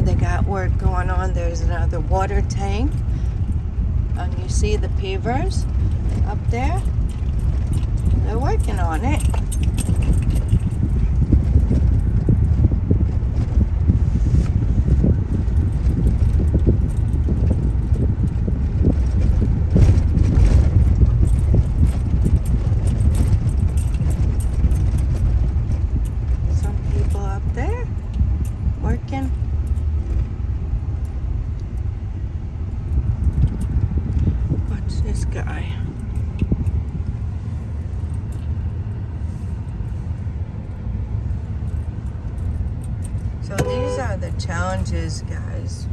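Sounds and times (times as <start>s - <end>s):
car road noise rumble: 0.0s - 45.9s
knocks and rattles: 2.9s - 13.6s, 14.8s - 30.3s.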